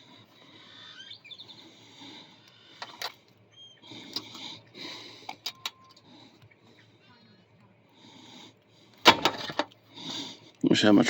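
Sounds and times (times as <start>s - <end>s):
bird chirps: 0.6s - 1.8s, 3.4s - 4.8s.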